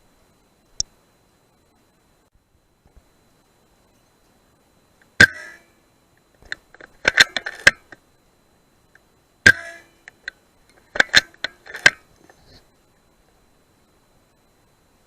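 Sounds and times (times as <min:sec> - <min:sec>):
air rifle shot: 0:05.2 - 0:05.6
metallic clicks of rifle recocking: 0:06.4 - 0:08.0, 0:09.5 - 0:12.0.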